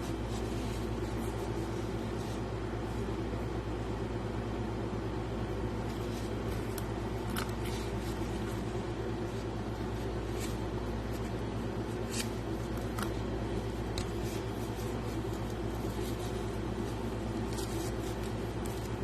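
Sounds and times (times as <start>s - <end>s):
packaging crinkling: 10.0s - 19.0s.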